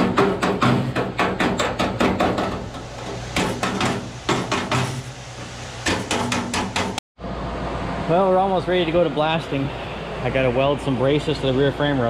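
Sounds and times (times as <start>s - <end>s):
rapid hammer blows: 0.0s - 5.2s
steady low hum: 1.8s - 12.0s.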